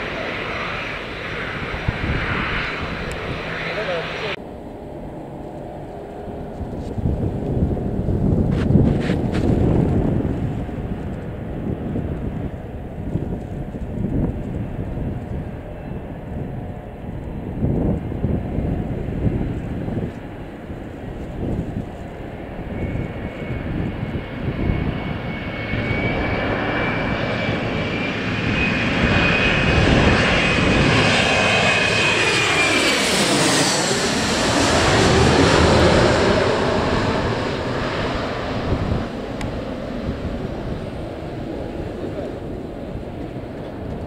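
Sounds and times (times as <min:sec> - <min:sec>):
airliner passing overhead: 0:00.0 - 0:44.0.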